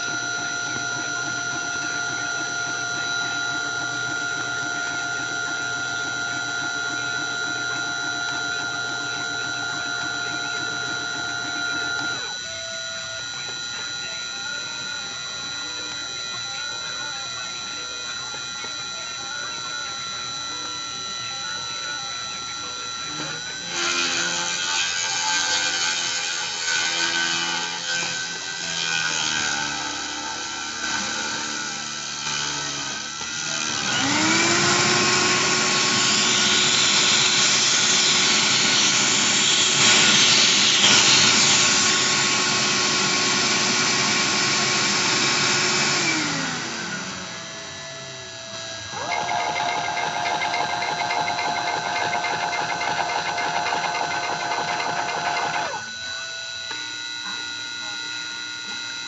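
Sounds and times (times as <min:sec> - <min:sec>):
stepper motors whining: 0:00.0 - 0:59.0.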